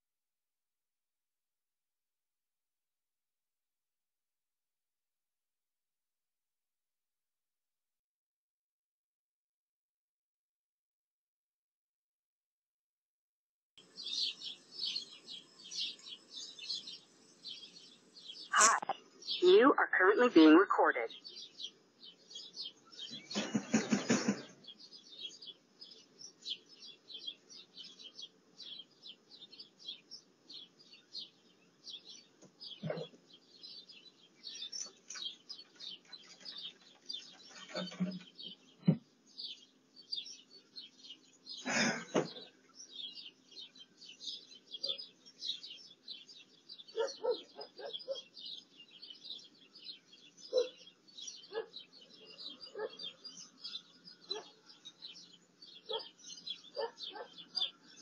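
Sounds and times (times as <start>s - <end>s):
small birds chirping: 13.8s - 58.0s.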